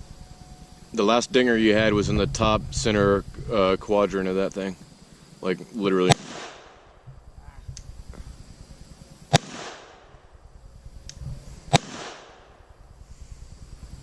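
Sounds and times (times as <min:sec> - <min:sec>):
pistol shots with echo: 0:06.0 - 0:06.8, 0:09.3 - 0:10.1, 0:11.7 - 0:12.6.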